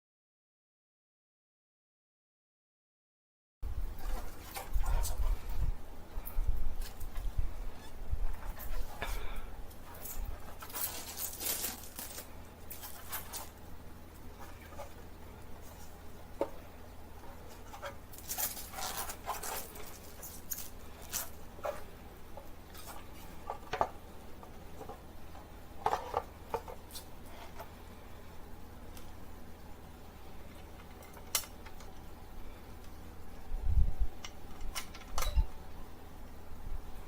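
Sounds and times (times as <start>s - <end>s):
steady low hum: 3.6s - 37.0s
packaging rustling: 6.7s - 25.1s.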